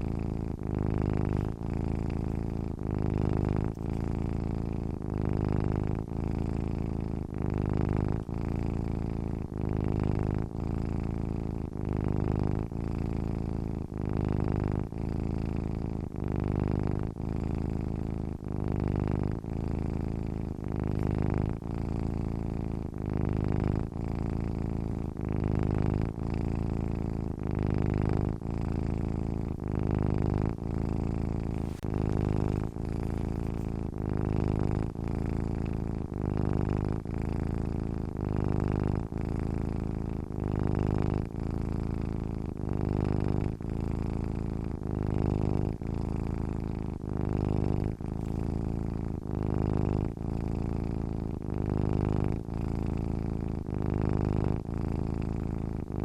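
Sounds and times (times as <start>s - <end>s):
cat purring: 0.0s - 56.0s.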